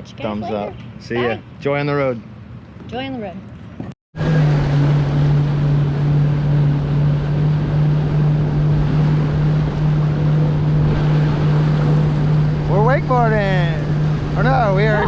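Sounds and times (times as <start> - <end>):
jet ski engine running: 4.2 - 15.0
wind and water rushing: 4.2 - 15.0.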